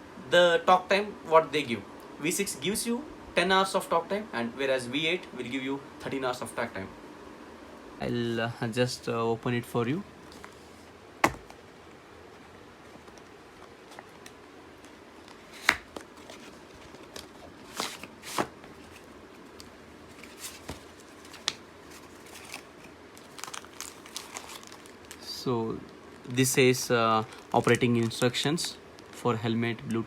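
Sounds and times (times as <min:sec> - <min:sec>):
packaging rustling and crinkling: 0:12.8 - 0:25.5, 0:26.2 - 0:29.2.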